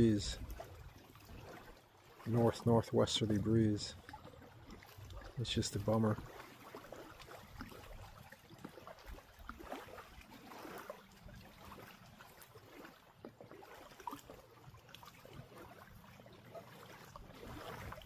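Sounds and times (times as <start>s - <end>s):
light splashes: 0.0s - 18.0s.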